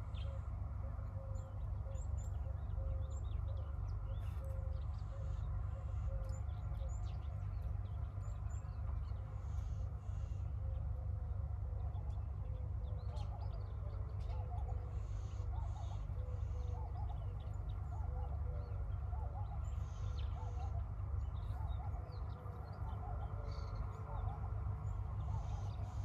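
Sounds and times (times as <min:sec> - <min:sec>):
steady low rumble: 0:00.0 - 0:26.0.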